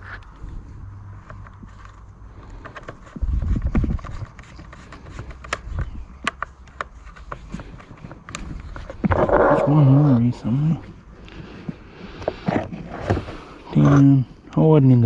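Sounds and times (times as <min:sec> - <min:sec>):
clicks of screws and plastic parts: 0:01.2 - 0:09.3.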